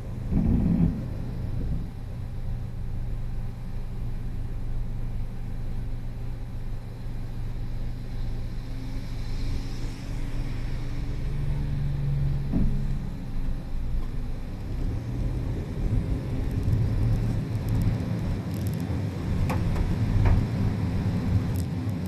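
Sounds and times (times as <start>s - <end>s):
car engine idling: 19.2s - 21.6s.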